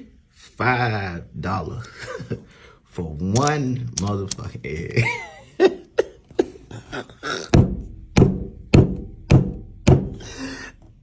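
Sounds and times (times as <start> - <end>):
sharp knocks: 7.6 - 10.2.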